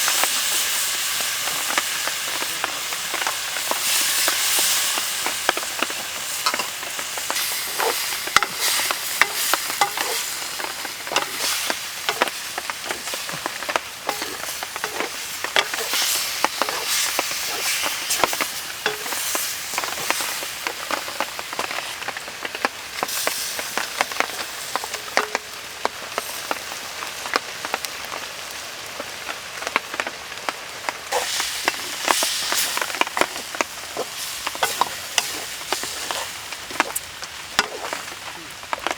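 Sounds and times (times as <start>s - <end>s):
food sizzling in a pan: 0.0s - 38.9s
utensil scraping a pan: 1.5s - 25.5s, 31.1s - 37.0s, 37.6s - 38.2s.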